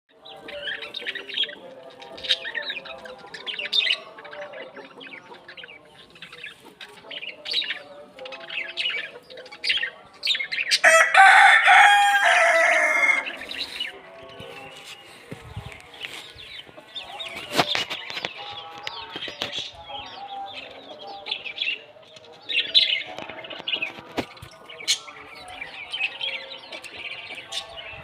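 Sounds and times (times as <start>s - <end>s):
chicks peeping: 0.1s - 28.0s
hens clucking: 10.7s - 28.0s
chicken loud drawn-out call: 10.8s - 13.4s.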